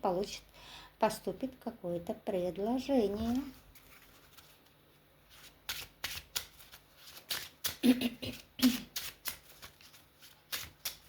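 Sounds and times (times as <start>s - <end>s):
cards being shuffled: 3.2s - 11.0s.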